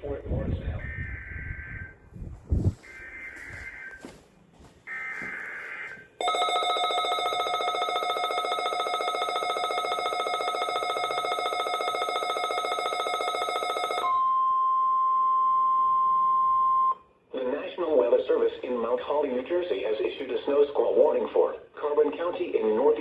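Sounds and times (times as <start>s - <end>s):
buzzy pulsing alert alarm: 2.8s - 4.0s, 4.9s - 14.2s
steady warning tone: 2.8s - 4.0s, 4.9s - 17.0s.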